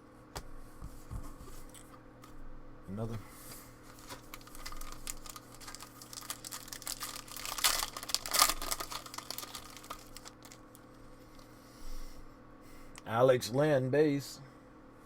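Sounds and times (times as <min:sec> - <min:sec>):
foil wrapper crinkling and tearing: 0:03.9 - 0:10.9.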